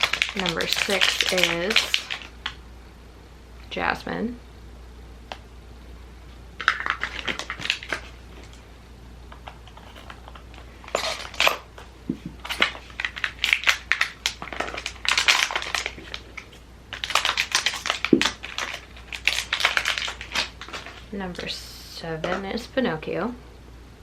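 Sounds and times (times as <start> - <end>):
cardboard rustling and scraping: 9.4 - 13.3.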